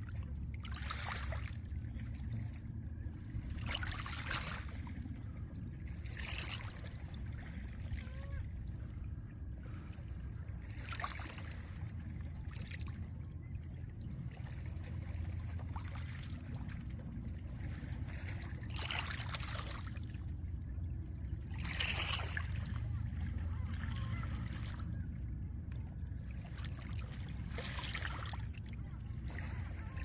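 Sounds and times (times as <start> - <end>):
low wind rumble: 0.0 - 30.0.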